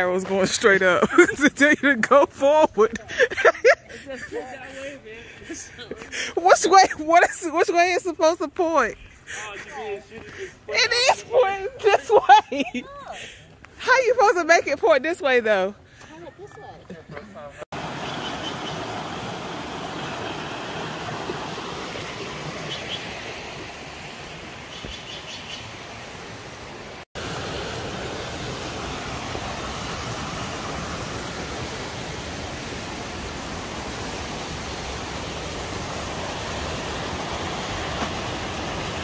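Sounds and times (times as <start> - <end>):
rush of flowing water: 17.7 - 39.0.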